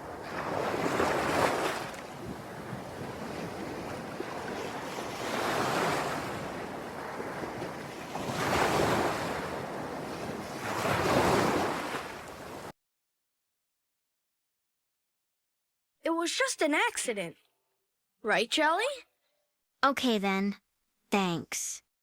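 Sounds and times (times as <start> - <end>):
ocean waves washing in: 0.0 - 12.7.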